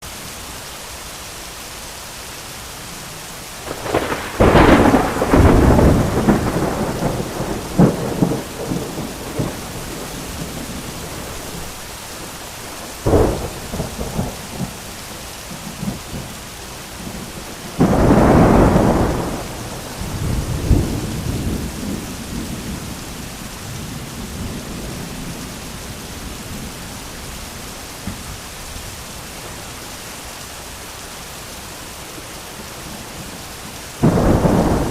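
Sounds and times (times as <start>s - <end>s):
heavy rain: 0.0s - 34.9s
thunder cracking and rolling: 3.6s - 11.8s, 17.0s - 25.4s, 34.0s - 34.9s.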